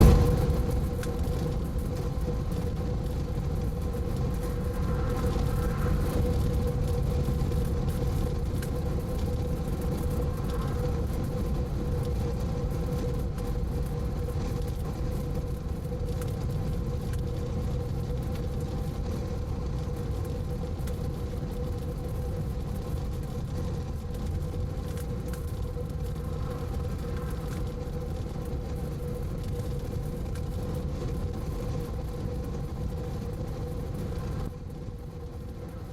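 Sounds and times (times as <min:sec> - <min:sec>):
mid-pitched hum: 0:00.0 - 0:35.9
road and wind noise: 0:00.0 - 0:35.9.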